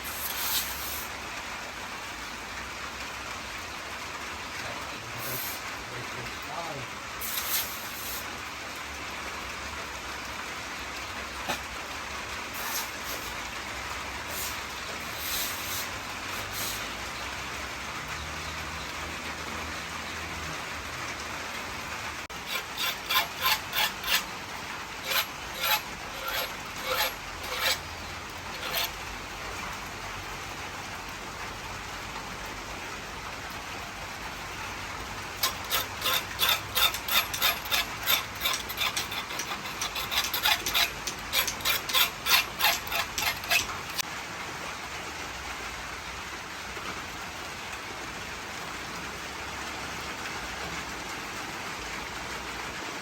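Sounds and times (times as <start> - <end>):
hand tool strokes on steel blade: 0.0 - 1.1, 7.2 - 8.3, 12.6 - 13.4, 14.3 - 16.9, 22.4 - 24.3, 25.0 - 27.9, 28.5 - 29.0, 35.4 - 44.0.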